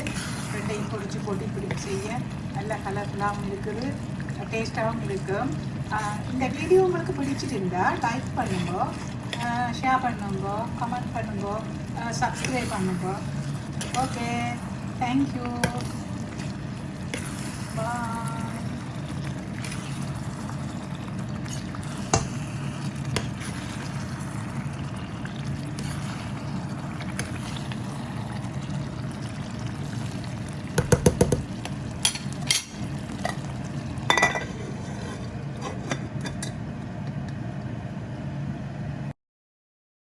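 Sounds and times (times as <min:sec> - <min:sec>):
dishes and utensils clinking: 0:32.0 - 0:33.4, 0:34.1 - 0:36.6.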